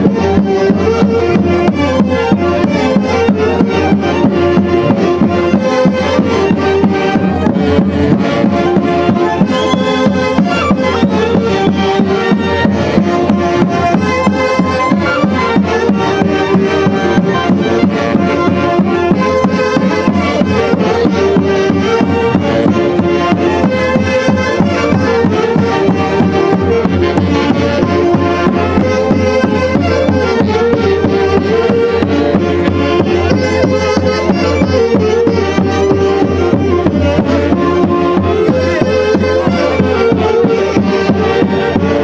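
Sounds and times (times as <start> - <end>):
folk orchestra instrumental: 0.0 - 42.0.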